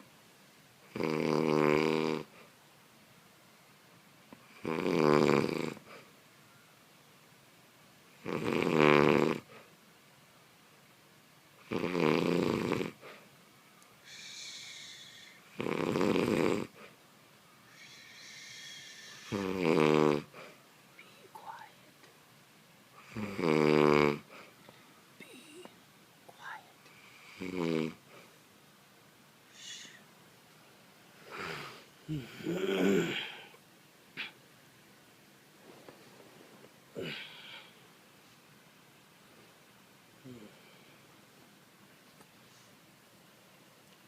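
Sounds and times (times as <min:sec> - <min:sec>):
person snoring: 0:00.9 - 0:02.3, 0:04.6 - 0:05.9, 0:08.2 - 0:09.5, 0:11.7 - 0:13.0, 0:14.0 - 0:16.8, 0:17.7 - 0:20.4, 0:23.0 - 0:24.3, 0:27.2 - 0:28.0, 0:29.5 - 0:30.0, 0:31.3 - 0:33.6, 0:36.9 - 0:37.8, 0:40.2 - 0:40.8
soft airy breath: 0:13.0 - 0:13.4, 0:14.0 - 0:15.4, 0:17.6 - 0:19.4, 0:20.3 - 0:21.9, 0:24.2 - 0:25.6, 0:28.0 - 0:28.5, 0:29.5 - 0:30.2, 0:31.1 - 0:32.0, 0:35.5 - 0:38.5, 0:42.4 - 0:42.9.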